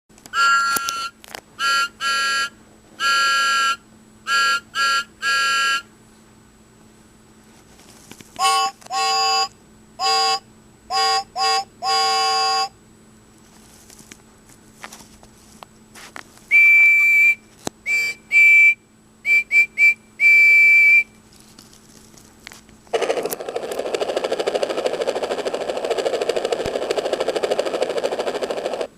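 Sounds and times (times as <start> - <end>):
faint electrical hum: 0.1 - 28.9
steam whistle through small speaker: 0.4 - 5.9, 8.4 - 12.7, 16.5 - 21.1
electronic engine running effect: 23.0 - 28.9.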